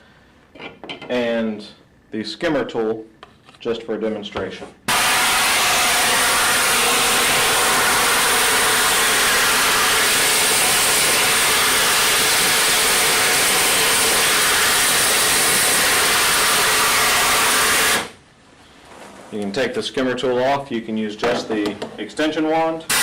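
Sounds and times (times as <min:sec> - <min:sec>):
compressed air vacuum rushing: 0:04.9 - 0:18.2.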